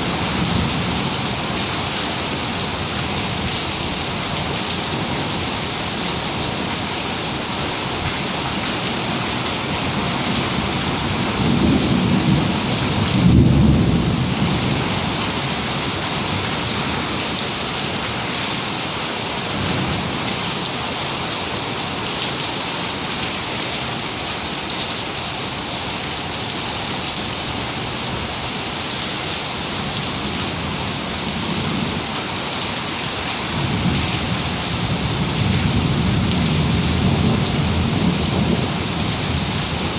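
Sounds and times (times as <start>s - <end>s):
steady rain: 0.0s - 39.9s
thunder rumbling: 10.4s - 15.4s.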